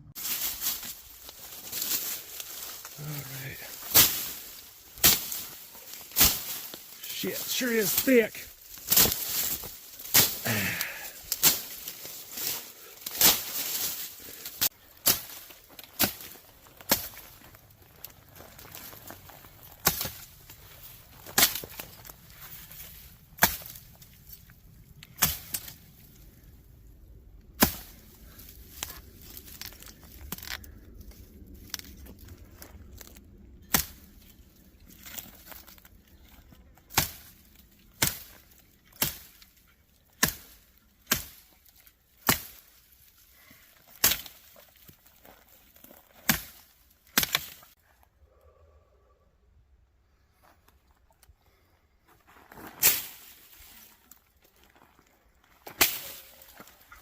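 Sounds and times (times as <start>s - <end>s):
machete chopping: 5.0s - 6.8s, 8.8s - 11.9s, 13.0s - 17.2s, 19.8s - 20.3s, 23.4s - 23.9s, 27.6s - 28.0s, 33.6s - 34.0s, 36.9s - 37.3s, 38.0s - 39.4s, 40.2s - 41.5s, 42.2s - 42.6s, 43.9s - 44.5s, 46.2s - 47.6s, 55.7s - 56.4s.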